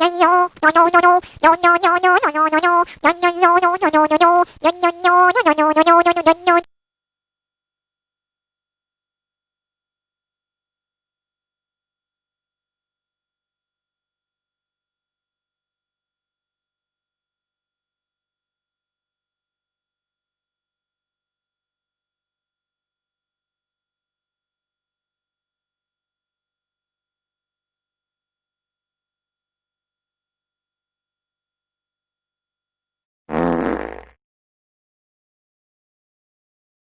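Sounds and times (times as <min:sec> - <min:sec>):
high-pitched electronic sine tone: 0:06.6 - 0:33.1
fart sound effect: 0:33.3 - 0:34.2.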